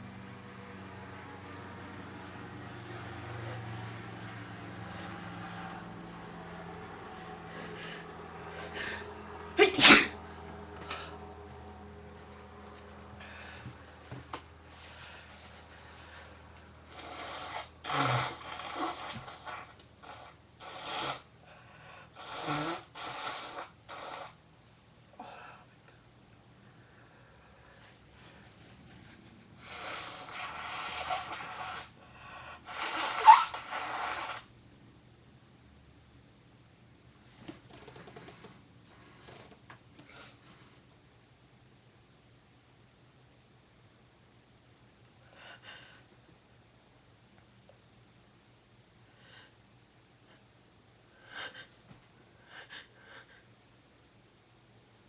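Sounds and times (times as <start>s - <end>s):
person blowing nose: 7.5s - 10.2s, 16.9s - 21.3s, 22.1s - 24.4s, 29.6s - 34.5s
person sniffling: 7.5s - 10.2s.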